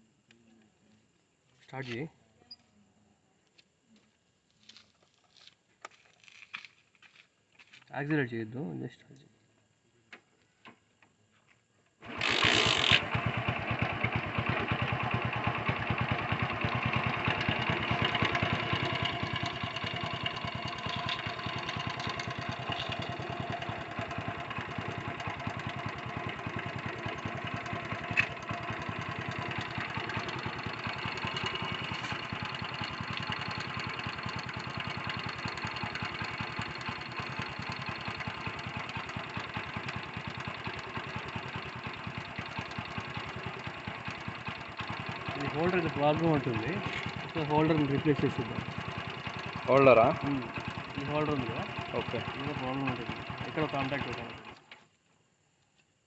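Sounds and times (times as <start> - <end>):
motorcycle engine idling: 12.0 - 55.0.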